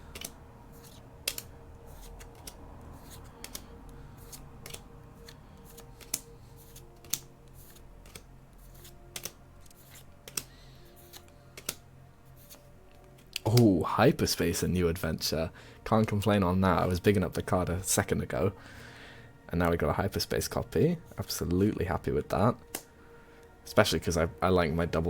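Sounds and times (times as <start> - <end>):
cards clicking and snapping: 0.0 - 13.8, 22.6 - 22.9
faint steady hum: 0.0 - 25.0.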